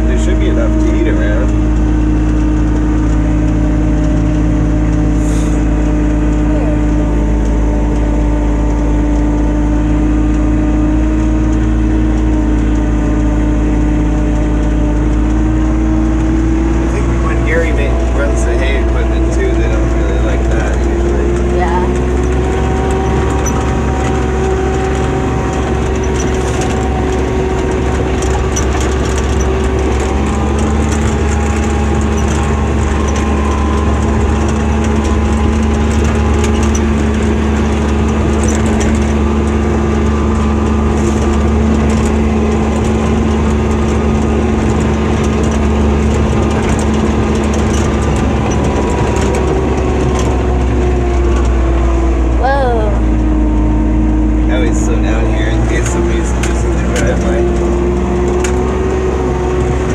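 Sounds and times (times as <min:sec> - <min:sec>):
atv engine droning: 0:00.0 - 0:59.9
heavy low rumble: 0:00.0 - 0:59.9.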